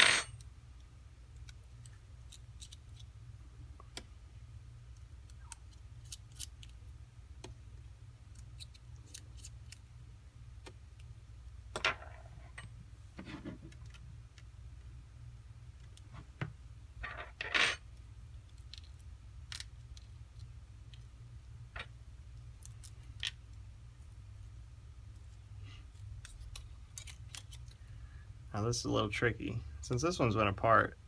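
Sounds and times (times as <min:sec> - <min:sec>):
scrape on bench: 0:13.2 - 0:13.7.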